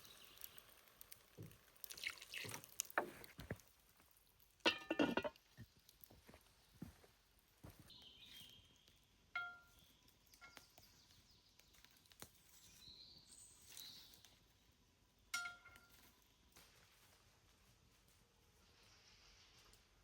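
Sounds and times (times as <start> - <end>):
dishware clinking: 4.7 - 5.4
faint bird chirps: 7.9 - 14.4.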